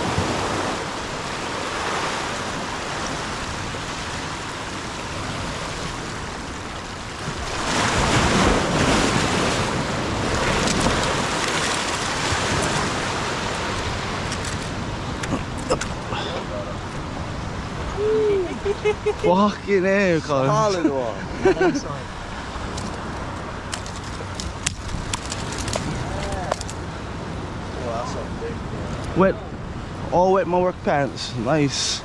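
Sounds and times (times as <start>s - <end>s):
wind buffeting microphone: 0.0s - 19.3s, 21.2s - 31.3s
surf washing onto shore: 0.0s - 32.0s.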